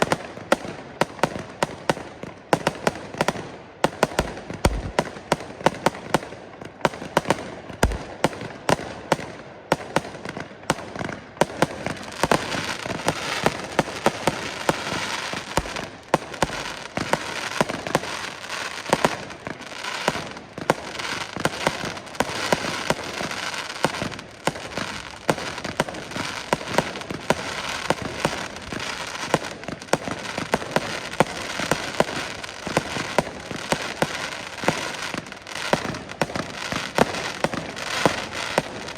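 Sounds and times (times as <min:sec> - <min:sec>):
firework battery shots: 0:04.6 - 0:05.0, 0:07.8 - 0:08.1.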